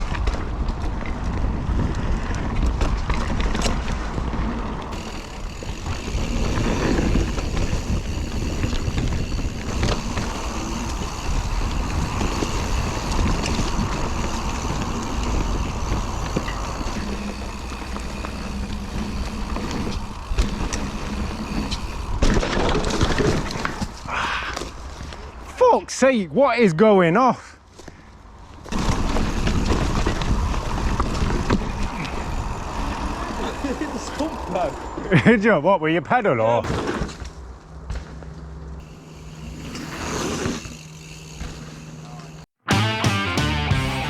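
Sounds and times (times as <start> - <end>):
wind buffeting microphone: 0.0 - 24.1, 28.6 - 35.2
tyres rolling over dirt: 0.0 - 25.6, 27.8 - 35.3, 36.6 - 42.5.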